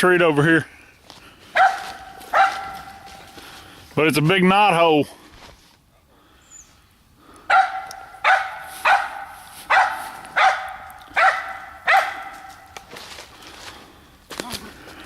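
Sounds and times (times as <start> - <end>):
dog barking: 1.5 - 3.3, 7.5 - 12.8.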